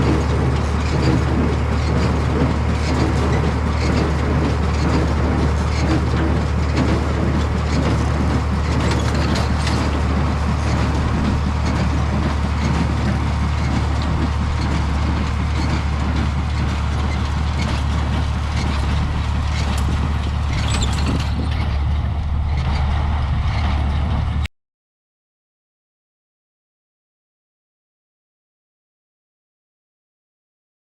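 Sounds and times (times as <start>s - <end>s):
hay baler clatter: 0.0s - 24.5s
tractor engine drone: 0.0s - 24.5s.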